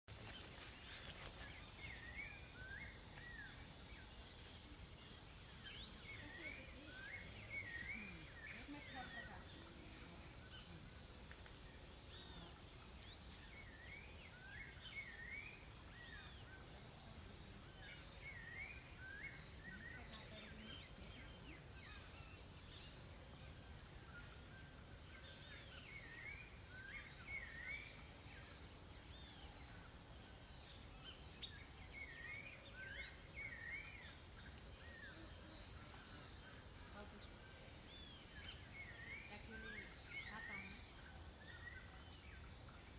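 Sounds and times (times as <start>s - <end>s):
steady outdoor hiss: 0.1s - 42.9s
birds chirping and whistling: 0.2s - 10.7s, 23.8s - 42.9s.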